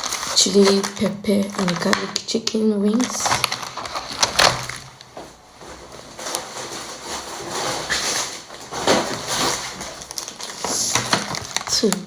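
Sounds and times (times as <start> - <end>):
packaging and bags rustling: 0.0 - 12.0
items knocking when set down: 3.0 - 12.0.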